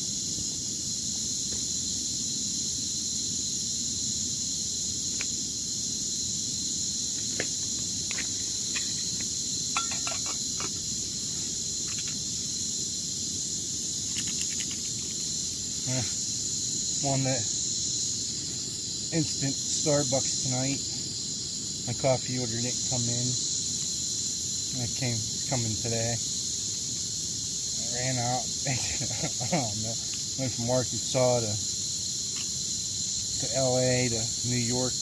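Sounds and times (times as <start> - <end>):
camping stove hissing: 0.0 - 35.0
camp gear clinking: 8.1 - 10.8.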